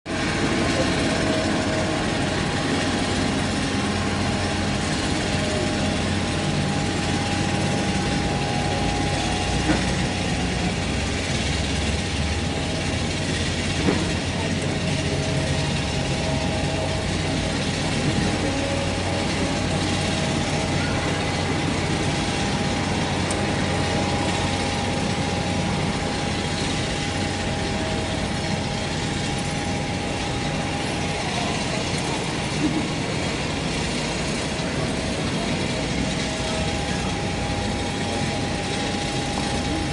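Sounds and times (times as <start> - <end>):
jet engines whining: 0.1 - 39.9.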